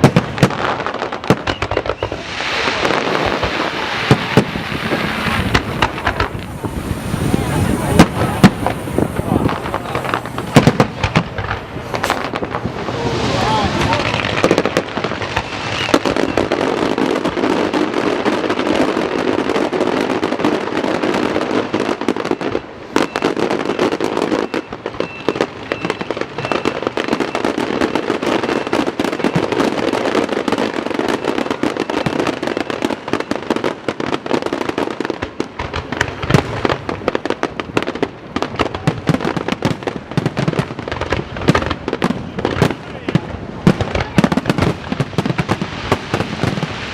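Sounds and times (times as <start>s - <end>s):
fireworks crackling and banging: 0.0s - 46.9s.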